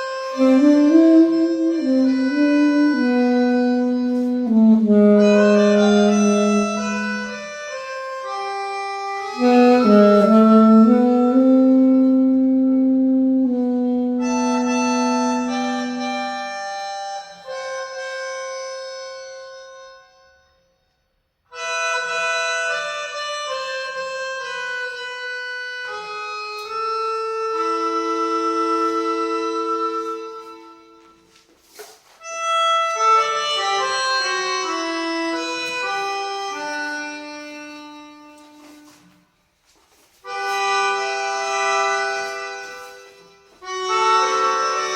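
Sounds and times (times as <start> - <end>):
alto saxophone: 0.0 - 20.5, 21.5 - 31.5, 40.2 - 44.9
melodica music: 0.0 - 44.9.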